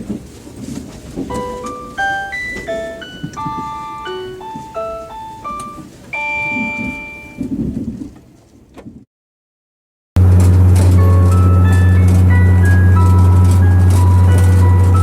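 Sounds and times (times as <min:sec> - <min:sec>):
train running rumble: 0:00.0 - 0:06.1, 0:10.2 - 0:15.0
electronic announcement chime: 0:01.3 - 0:07.5, 0:10.9 - 0:15.0.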